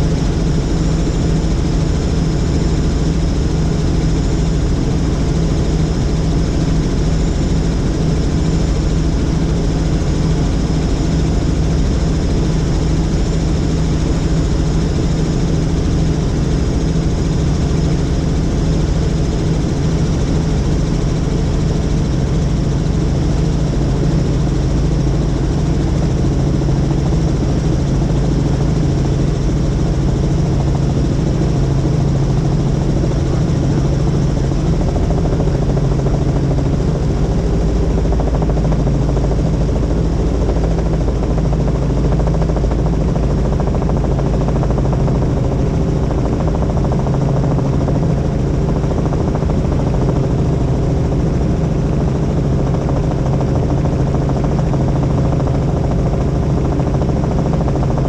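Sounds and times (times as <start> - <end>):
helicopter rotor and engine: 0.0 - 58.0.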